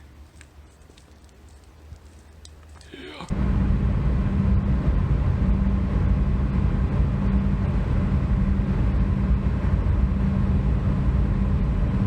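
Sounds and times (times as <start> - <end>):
vehicle engine and road drone: 0.0 - 12.0.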